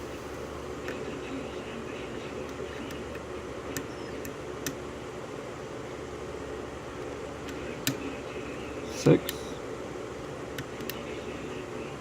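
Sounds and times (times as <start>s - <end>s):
steady background hum: 0.0s - 12.0s.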